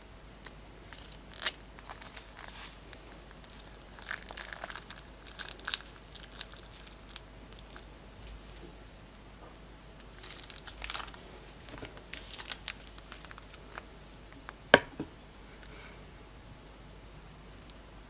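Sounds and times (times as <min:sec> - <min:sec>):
sticky slime crackles: 0:00.4 - 0:07.9, 0:10.0 - 0:13.9.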